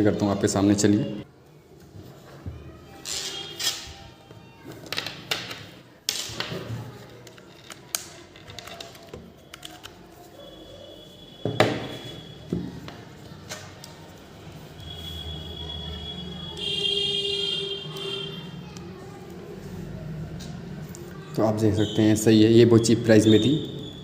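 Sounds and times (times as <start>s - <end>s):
cable handling clicks and knocks: 4.7s - 10.0s.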